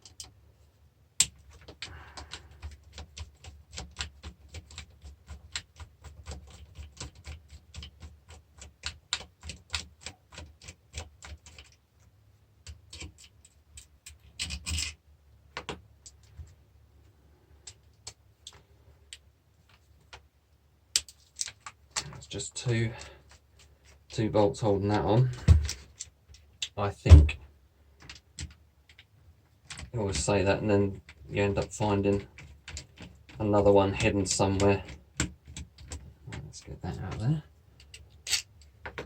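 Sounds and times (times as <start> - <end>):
parts rattling: 24.8 - 27.4.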